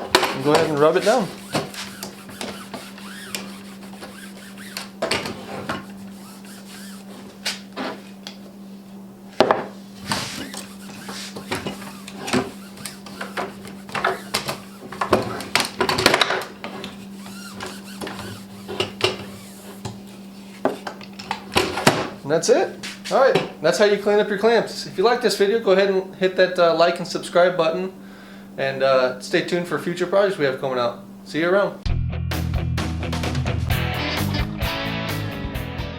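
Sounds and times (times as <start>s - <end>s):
steady low hum: 9.8s - 15.9s.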